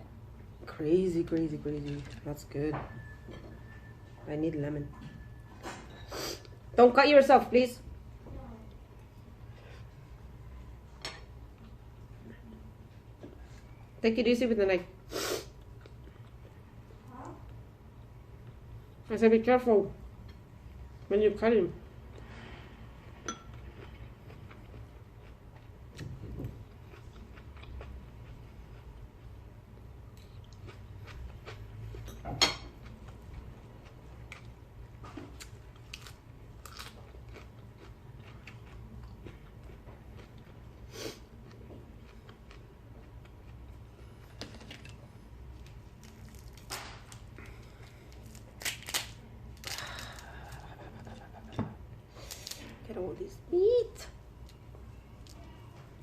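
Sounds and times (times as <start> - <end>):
steady low hum: 0.0 - 56.0
person chewing food: 23.3 - 32.1, 35.3 - 49.0.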